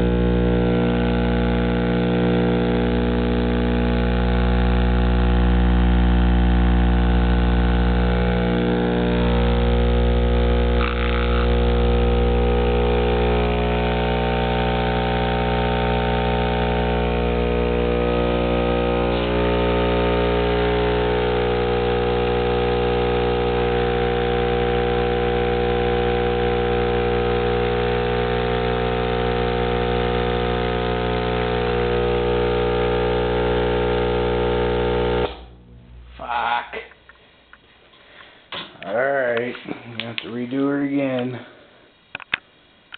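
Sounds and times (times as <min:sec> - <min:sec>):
subwoofer loud low hum: 0:00.0 - 0:37.5.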